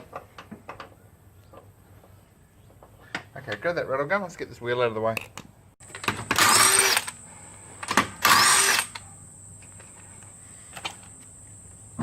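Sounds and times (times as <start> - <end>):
impact wrench bursts: 5.8 - 7.2, 7.8 - 9.0.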